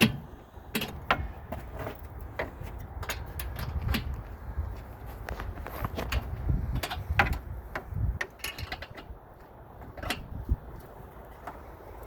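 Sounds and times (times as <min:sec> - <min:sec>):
wrench and metal parts clinking: 0:08.2 - 0:09.1.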